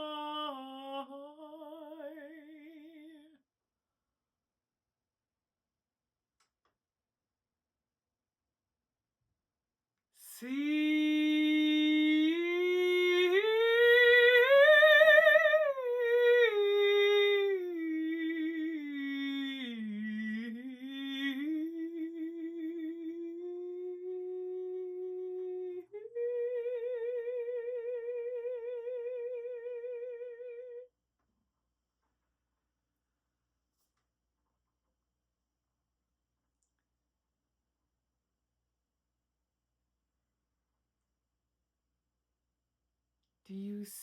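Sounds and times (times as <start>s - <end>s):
woman singing without words: 0.0s - 3.4s, 10.2s - 30.9s, 43.5s - 44.0s.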